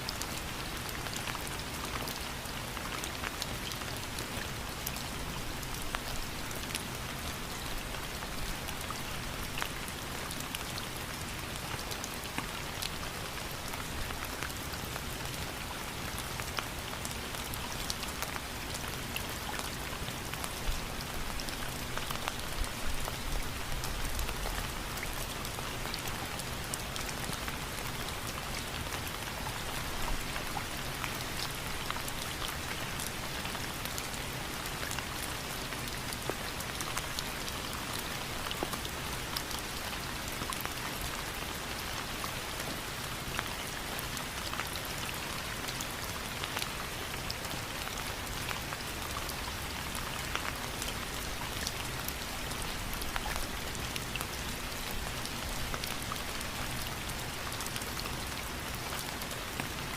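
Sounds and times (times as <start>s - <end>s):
steady rain pattering: 0.0s - 59.9s.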